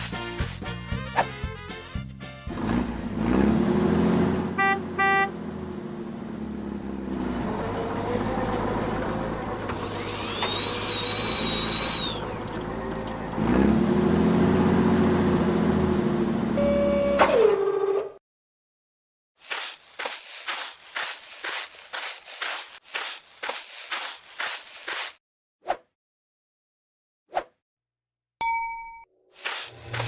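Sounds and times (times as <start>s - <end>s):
construction vehicle engine revving: 2.4s - 17.7s
short horn beeps: 4.6s - 5.3s, 16.6s - 17.4s.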